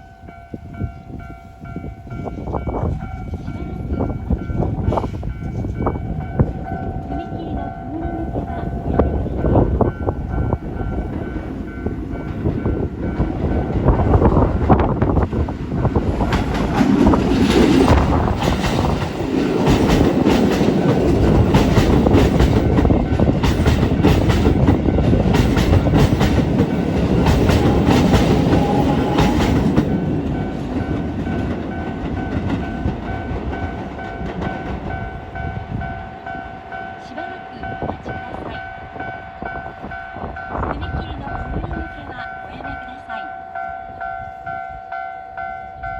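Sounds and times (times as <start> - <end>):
level crossing warning bell: 0.0 - 17.9, 18.5 - 45.9
electric train passing: 0.0 - 45.9
wheels clattering over rail joints: 8.4 - 35.9.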